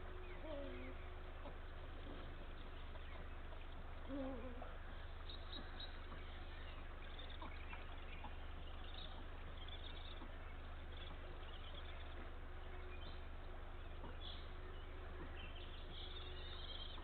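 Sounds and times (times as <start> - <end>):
faint small bird chirps: 0.0 - 17.0
owl low call: 0.0 - 17.0
steady low background hum: 0.0 - 17.0.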